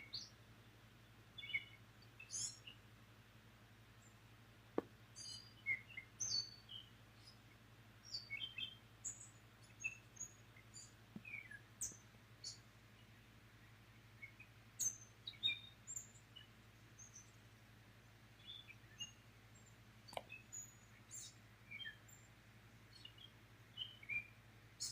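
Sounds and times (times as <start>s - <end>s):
faint low hum: 0.0s - 24.9s
birds chirping: 1.0s - 2.8s, 5.2s - 24.9s.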